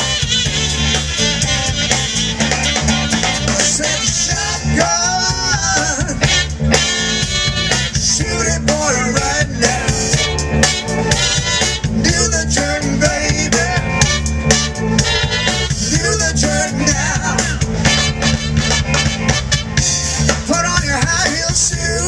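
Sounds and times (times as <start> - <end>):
saxophone solo: 0.0 - 4.3, 6.2 - 8.1, 10.0 - 12.0, 14.0 - 15.8, 17.8 - 20.0
blues band playing: 0.0 - 22.0.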